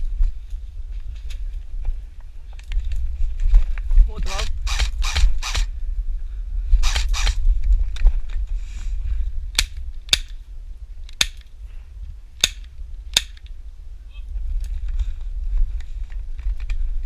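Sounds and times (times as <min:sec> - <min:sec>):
airsoft gun shots: 0:06.8 - 0:07.4.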